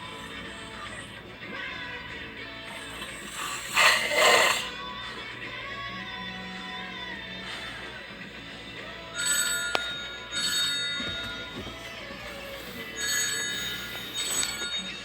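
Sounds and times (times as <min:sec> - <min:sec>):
background music: 0:00.0 - 0:15.0
phone ringtone ringing: 0:08.9 - 0:15.0.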